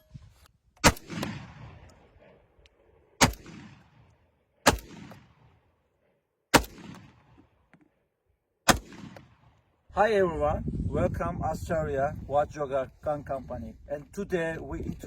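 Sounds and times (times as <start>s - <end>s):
shotgun shots with echo: 0.8s - 1.8s, 3.2s - 4.0s, 4.6s - 5.5s, 6.5s - 7.4s, 8.6s - 9.5s.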